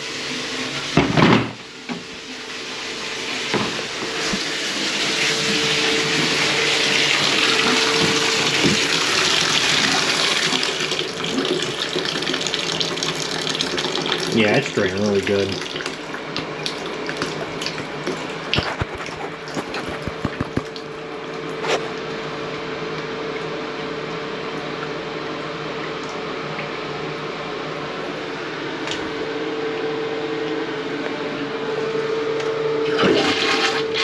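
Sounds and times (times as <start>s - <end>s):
water running from a faucet: 1.6s - 21.4s, 32.8s - 34.0s.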